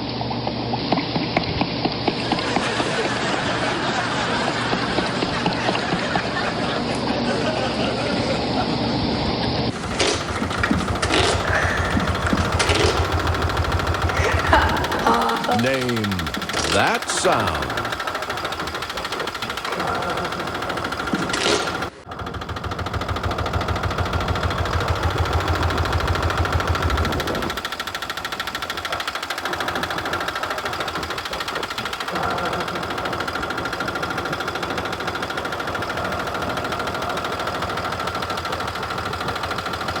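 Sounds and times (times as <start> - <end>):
engine knocking: 9.7 - 40.0.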